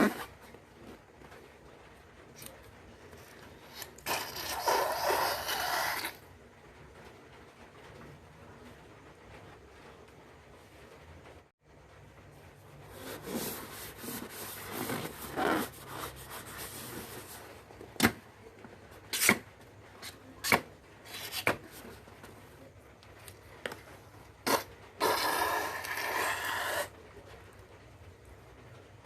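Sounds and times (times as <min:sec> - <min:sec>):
balloon being rubbed: 0:00.0 - 0:00.3, 0:03.7 - 0:06.2, 0:12.9 - 0:17.5, 0:24.5 - 0:26.9.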